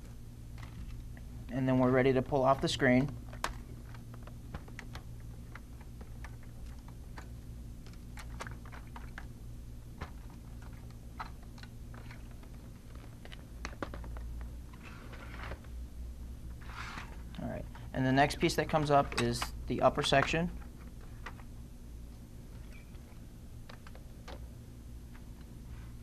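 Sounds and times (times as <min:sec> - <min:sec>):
plastic parts clicking: 0:03.0 - 0:09.3, 0:10.0 - 0:14.2.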